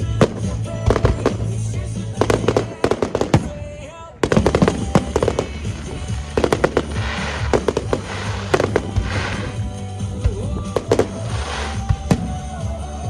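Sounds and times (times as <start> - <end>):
fireworks banging: 0.0 - 12.9
fireworks crackling hiss: 0.0 - 13.0
music: 0.0 - 13.0.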